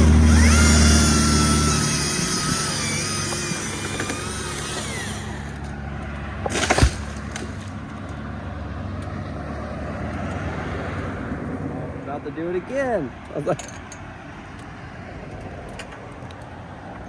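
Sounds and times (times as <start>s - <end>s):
engine idling: 0.0s - 6.2s.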